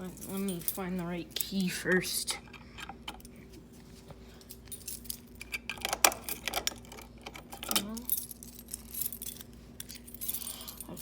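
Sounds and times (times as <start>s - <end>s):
keys jangling: 0.0s - 0.9s, 4.4s - 11.0s.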